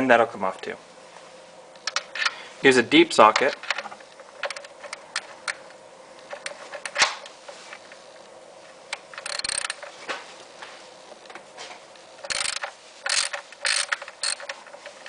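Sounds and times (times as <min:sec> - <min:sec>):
ratchet clicks: 0:01.8 - 0:02.3, 0:03.4 - 0:07.0, 0:09.0 - 0:09.9, 0:12.2 - 0:15.0.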